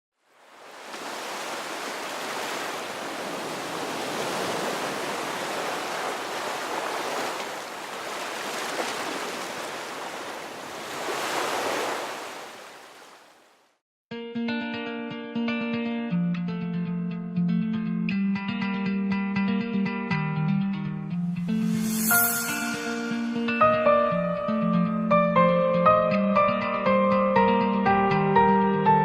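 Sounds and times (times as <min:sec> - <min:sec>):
sea waves washing in: 0:00.2 - 0:13.6, 0:21.5 - 0:23.6.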